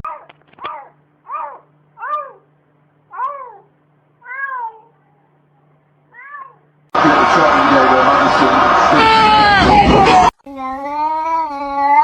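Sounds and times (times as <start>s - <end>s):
cat meowing: 3.2s - 5.0s, 6.2s - 6.6s.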